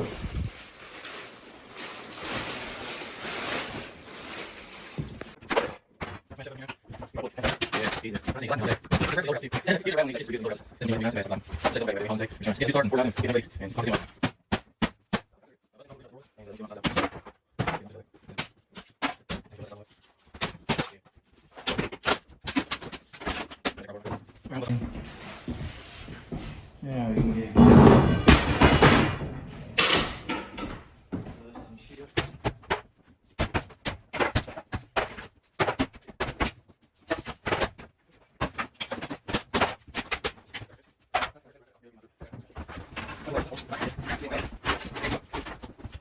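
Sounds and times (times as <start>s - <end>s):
rattling debris: 0.0s - 5.4s, 27.3s - 30.9s
demolition knocks and clatter: 24.6s - 32.8s.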